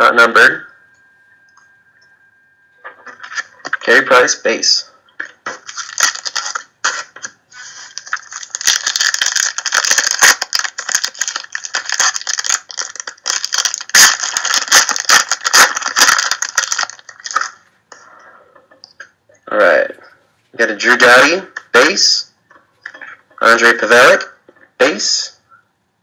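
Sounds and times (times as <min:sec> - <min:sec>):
card packaging rustling: 0:03.1 - 0:03.8, 0:05.2 - 0:17.6.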